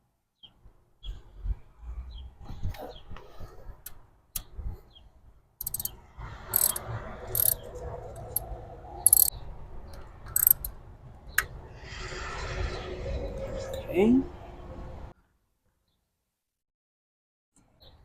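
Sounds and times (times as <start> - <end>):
ratchet wrench clicking: 5.6 - 5.9, 6.5 - 7.6, 8.2 - 8.4, 9.0 - 9.3, 10.3 - 10.7
sharp metal clicks: 5.6 - 7.6, 8.2 - 8.5, 9.1 - 9.3, 10.3 - 10.7.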